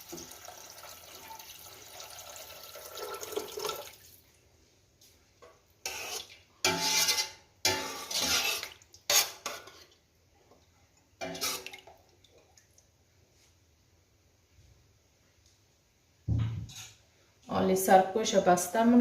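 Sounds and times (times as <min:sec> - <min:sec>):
water pouring into a pot: 0:00.0 - 0:04.2, 0:11.2 - 0:12.8.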